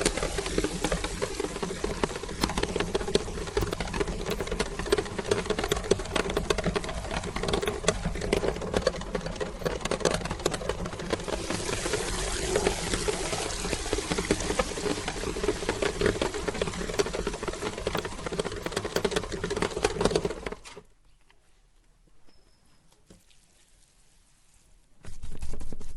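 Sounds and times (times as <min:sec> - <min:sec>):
electric meat grinder motor hum: 0:00.0 - 0:20.5.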